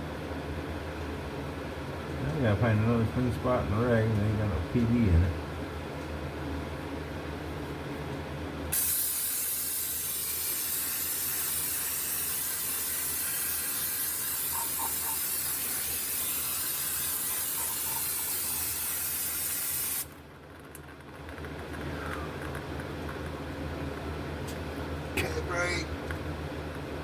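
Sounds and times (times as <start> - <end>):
aerosol spray can hissing: 8.8 - 20.1.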